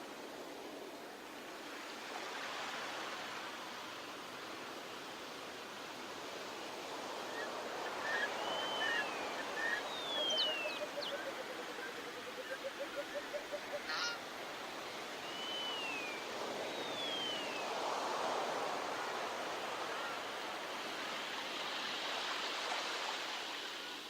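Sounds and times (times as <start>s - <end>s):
surf washing on a beach: 0.0s - 24.0s
whistled bird calls: 7.3s - 14.2s, 15.2s - 17.6s.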